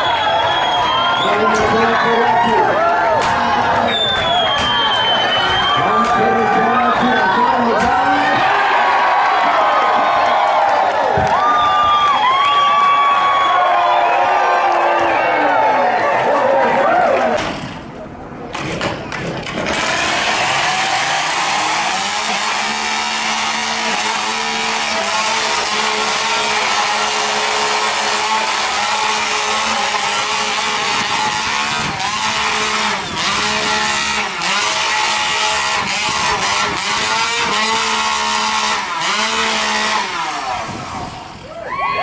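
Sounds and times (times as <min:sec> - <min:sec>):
chainsaw cutting log: 0:00.3 - 0:10.2, 0:19.4 - 0:41.4.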